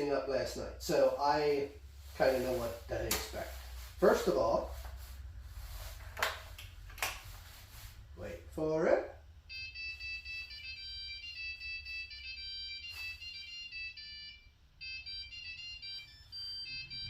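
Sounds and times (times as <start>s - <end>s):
electronic beeping melody: 9.5s - 17.0s.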